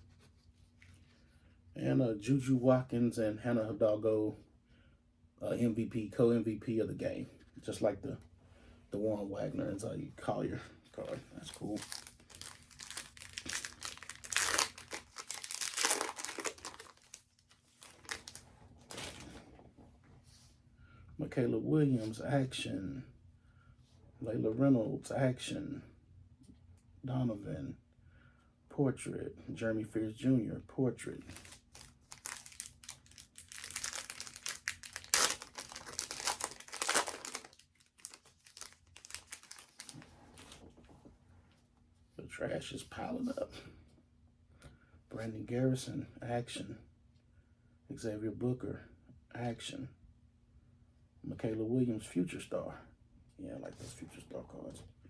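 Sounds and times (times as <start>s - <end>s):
card pack wrapper crinkling: 11.4s - 19.3s, 31.3s - 40.6s.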